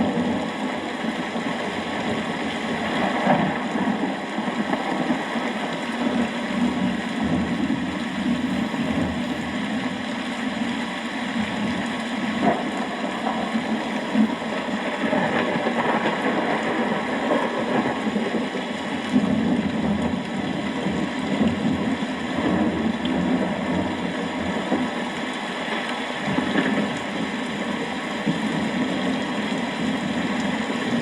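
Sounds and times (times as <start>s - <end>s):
thunder rumbling: 0.0s - 10.4s, 11.4s - 25.3s
steady rain: 0.0s - 31.0s.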